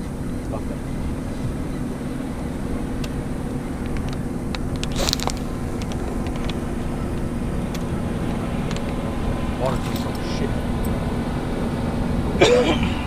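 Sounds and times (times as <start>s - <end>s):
boat motor humming: 0.0s - 13.0s
short rattle: 3.8s - 11.0s.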